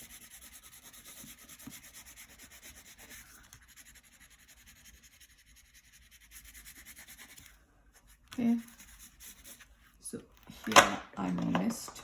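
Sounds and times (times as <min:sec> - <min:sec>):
crayon rubbing on paper: 0:00.0 - 0:10.0.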